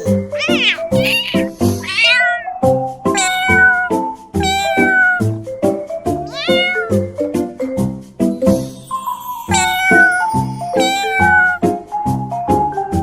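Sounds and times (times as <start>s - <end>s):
cat meowing: 0.0s - 2.6s, 3.2s - 5.4s, 6.3s - 7.1s, 9.5s - 11.7s.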